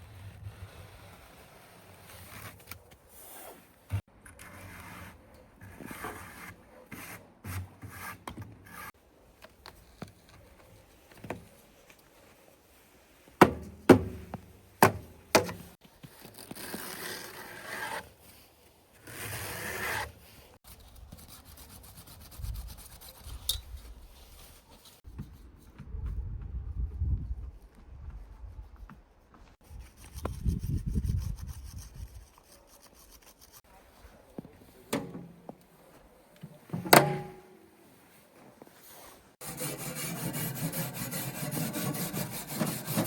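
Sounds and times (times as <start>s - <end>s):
rough rubbing on wood: 39.4s - 43.0s.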